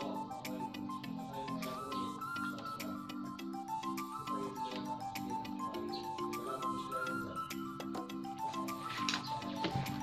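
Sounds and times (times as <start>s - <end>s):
light instrumental tune: 0.0s - 10.0s.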